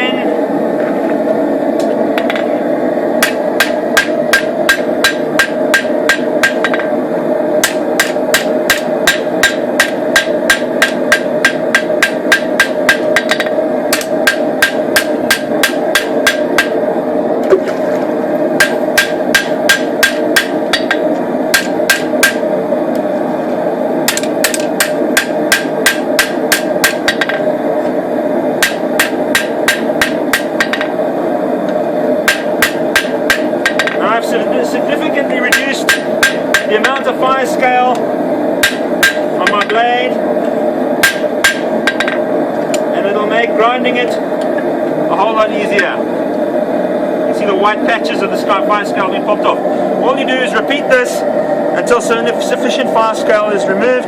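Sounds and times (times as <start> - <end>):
steady background noise: 0.0 - 54.0
hammer blows on anvil: 18.6 - 22.4, 35.5 - 37.0.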